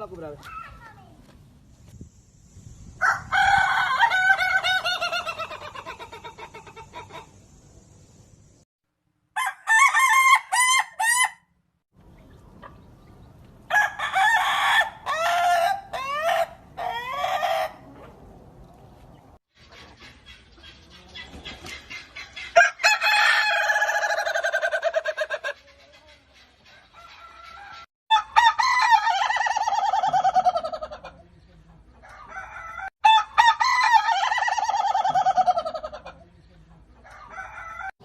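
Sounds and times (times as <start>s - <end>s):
rooster crowing: 3.0s - 5.5s, 9.4s - 11.4s, 13.7s - 17.8s, 22.6s - 25.0s, 27.0s - 30.4s, 32.0s - 35.5s, 37.1s - 38.0s.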